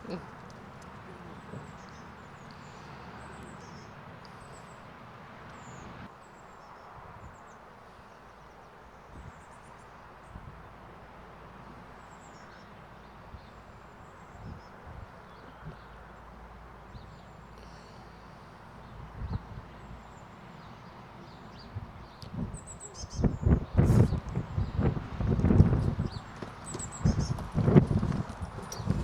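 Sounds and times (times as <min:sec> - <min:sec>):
small birds chirping: 0:00.0 - 0:29.0
wind rushing: 0:23.2 - 0:29.0.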